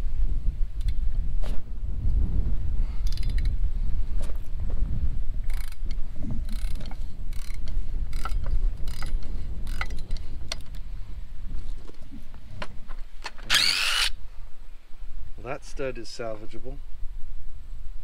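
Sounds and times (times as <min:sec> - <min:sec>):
ratchet wrench clicking: 0:03.0 - 0:03.5, 0:06.5 - 0:10.1.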